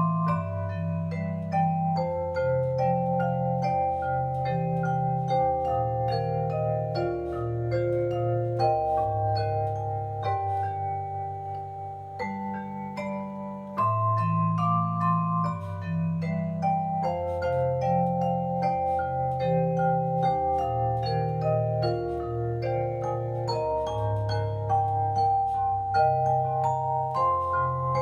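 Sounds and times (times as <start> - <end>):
digital piano melody: 0.0 - 28.0.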